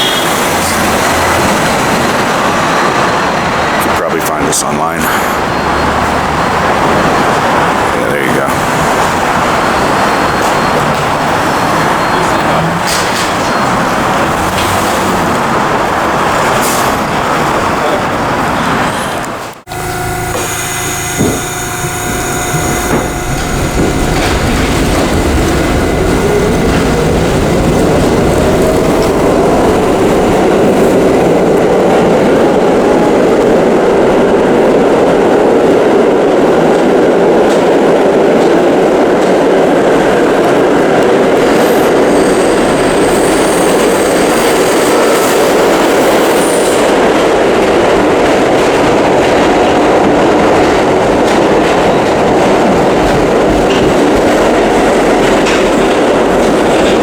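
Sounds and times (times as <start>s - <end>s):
street traffic: 0.0s - 57.0s
subway train rumbling: 0.0s - 57.0s.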